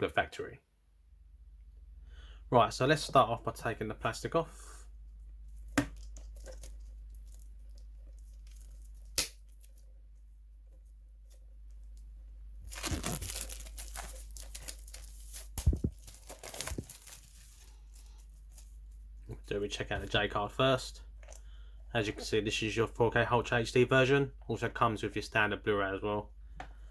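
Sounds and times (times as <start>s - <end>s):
plastic wrap crinkling and tearing: 6.0s - 9.8s, 12.6s - 19.0s.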